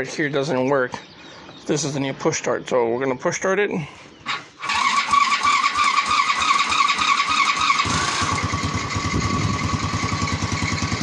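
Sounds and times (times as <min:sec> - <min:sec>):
electric starter whining: 0:04.3 - 0:11.0
quad engine idling: 0:04.3 - 0:11.0.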